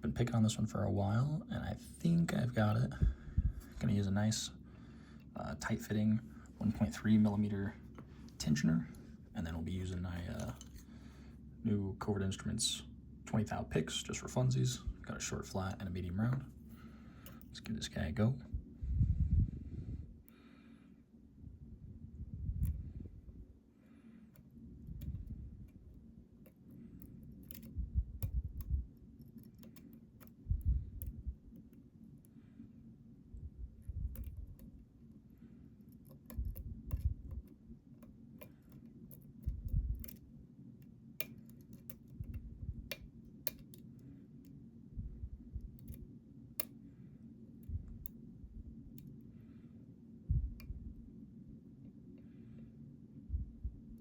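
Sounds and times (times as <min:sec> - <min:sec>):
lock pick clicking: 0:24.3 - 0:31.8, 0:34.0 - 0:34.8, 0:35.8 - 0:44.6, 0:45.6 - 0:46.8.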